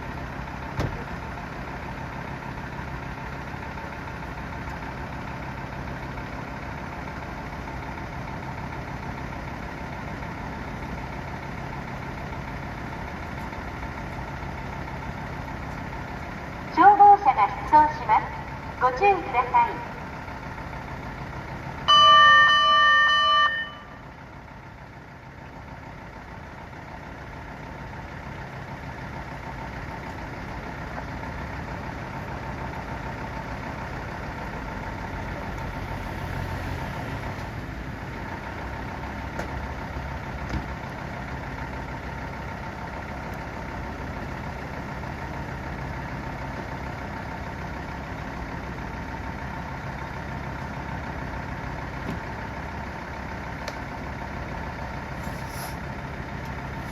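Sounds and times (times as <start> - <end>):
engine idling: 0.0 - 56.9
fire engine horn blast: 21.8 - 24.1.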